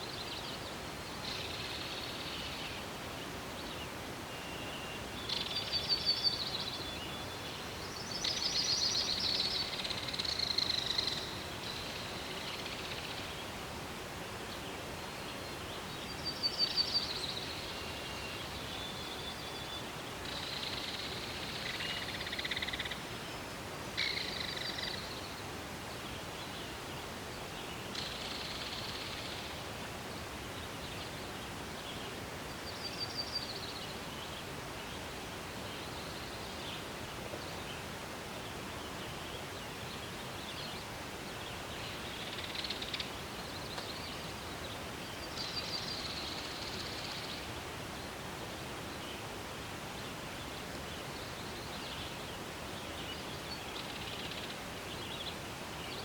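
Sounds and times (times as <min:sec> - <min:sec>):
songbirds chirping: 0:00.0 - 0:56.0
wind rustling trees: 0:00.0 - 0:56.0.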